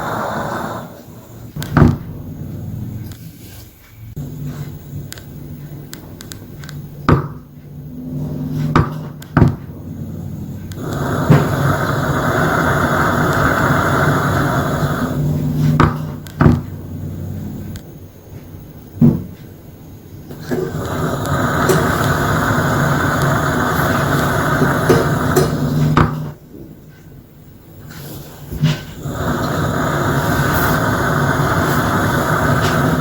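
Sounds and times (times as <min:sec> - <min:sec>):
gas lamp popping: 0:00.0 - 0:03.2, 0:05.0 - 0:07.5, 0:08.6 - 0:09.7, 0:10.3 - 0:16.8, 0:20.3 - 0:26.4, 0:27.8 - 0:33.0
gas lamp hissing roar: 0:00.0 - 0:03.3, 0:04.1 - 0:26.5, 0:27.3 - 0:33.0.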